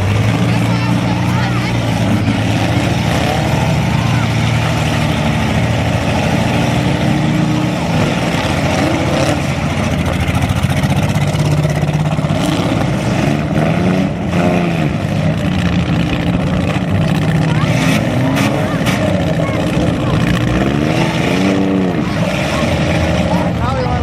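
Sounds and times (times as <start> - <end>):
car engines revving hard: 0.0 - 24.0.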